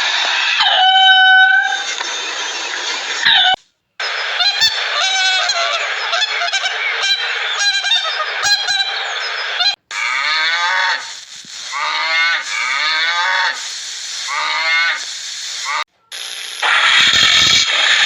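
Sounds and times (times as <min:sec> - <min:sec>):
pitched animal calls: 0:00.4 - 0:02.0, 0:03.2 - 0:15.8
short repeated animal calls: 0:00.4 - 0:02.0, 0:03.2 - 0:15.8
noisy background: 0:16.1 - 0:18.0.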